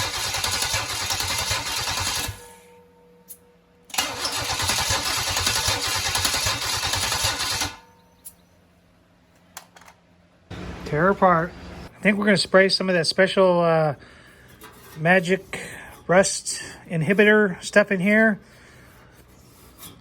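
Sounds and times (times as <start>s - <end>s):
engine cranked by starter: 0.0s - 2.6s, 3.9s - 7.8s.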